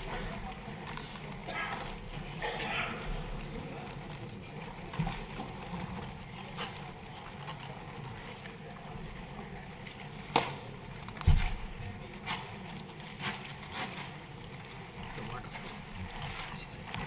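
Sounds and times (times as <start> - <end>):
faint murmur of voices: 0.0 - 6.8
room noise: 0.0 - 17.0.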